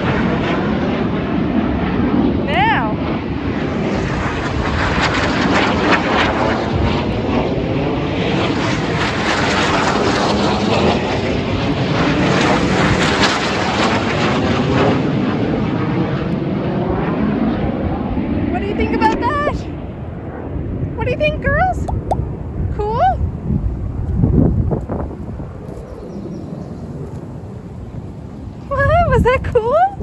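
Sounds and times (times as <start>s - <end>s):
jets flying low overhead: 0.0s - 21.9s.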